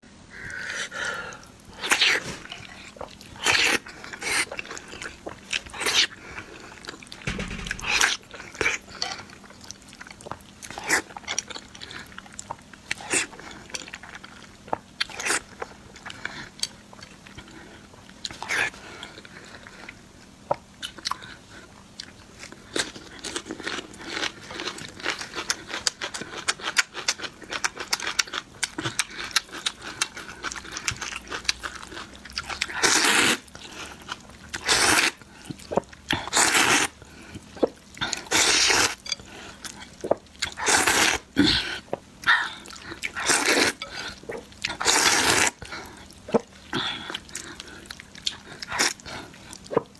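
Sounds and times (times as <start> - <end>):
eating noodles and chewing: 0.4 - 49.9
low thump: 7.3 - 8.2.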